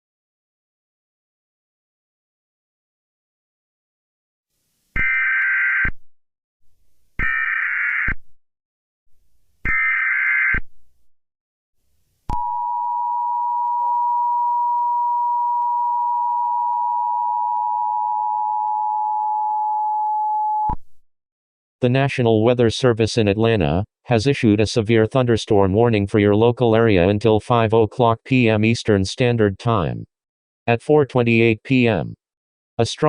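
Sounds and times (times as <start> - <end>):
piercing two-tone attention signal: 12.4 - 20.8.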